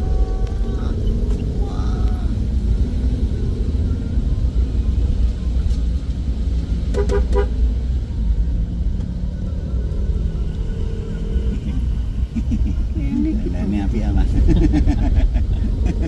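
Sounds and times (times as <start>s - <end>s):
car engine and road rumble: 0.0s - 16.0s
car horn short toots: 6.9s - 7.5s.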